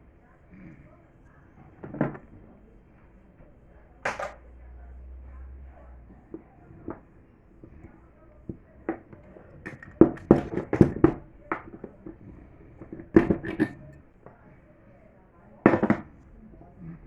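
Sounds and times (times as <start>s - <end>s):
fan parts clicking and knocking: 4.0s - 4.5s, 7.6s - 14.0s.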